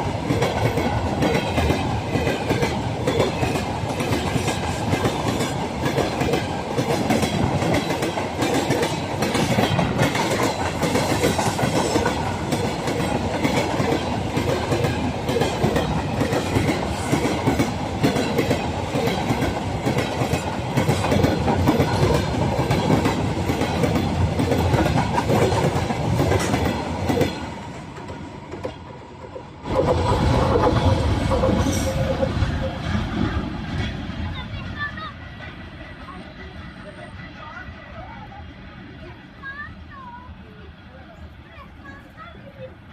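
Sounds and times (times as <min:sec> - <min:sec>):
train wheels clattering over rails: 0:00.0 - 0:36.0.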